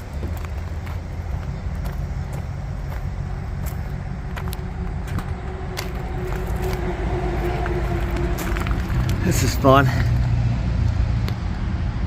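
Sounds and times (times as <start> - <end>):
pickup engine running: 0.0 - 12.0
sharp clicks and creaks: 3.7 - 9.4.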